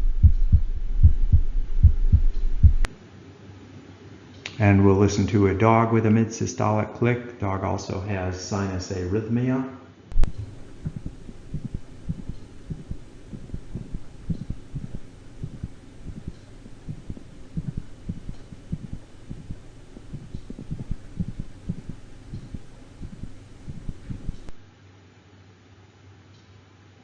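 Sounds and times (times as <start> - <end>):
dog heartbeat: 0.0 - 2.9, 10.1 - 24.6.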